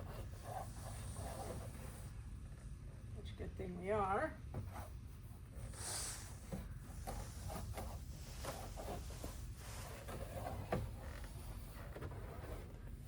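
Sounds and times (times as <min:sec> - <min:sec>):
wipe rubbing on glass: 0:00.0 - 0:02.1, 0:04.7 - 0:12.8.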